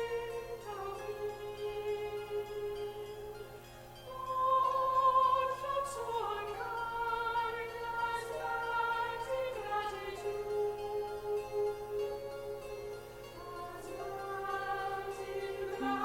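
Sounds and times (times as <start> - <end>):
choir singing: 0.0 - 3.4, 4.0 - 16.0
piano playing: 4.0 - 16.0.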